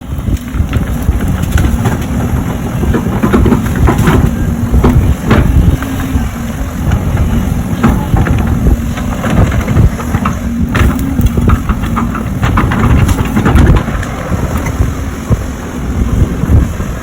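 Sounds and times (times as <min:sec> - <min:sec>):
diesel engine under load: 0:00.0 - 0:17.0
sharp cracks and knocks: 0:00.3 - 0:06.0, 0:07.2 - 0:14.8.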